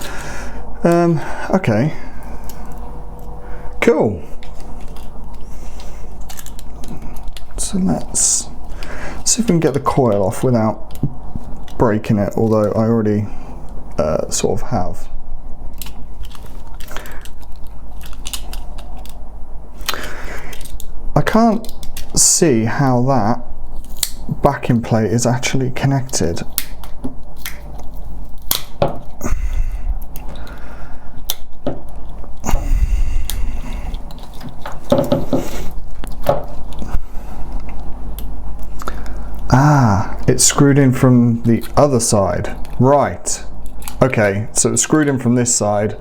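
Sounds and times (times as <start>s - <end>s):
steady low hum: 0.0s - 46.0s
small plastic parts clicking and cracking: 4.4s - 13.0s, 15.7s - 22.2s, 23.7s - 40.7s, 41.4s - 45.4s.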